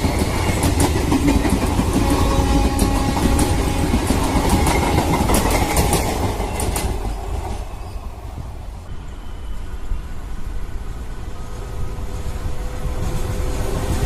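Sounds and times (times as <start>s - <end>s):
wheels clacking over rail joints: 0.0s - 8.4s
train rumbling over bridge: 0.0s - 14.0s.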